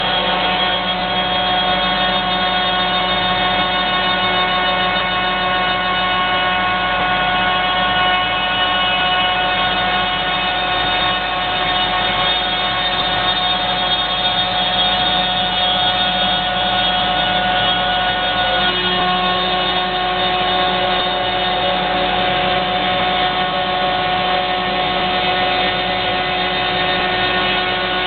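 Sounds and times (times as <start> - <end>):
machine spindle whine: 0.0 - 28.0.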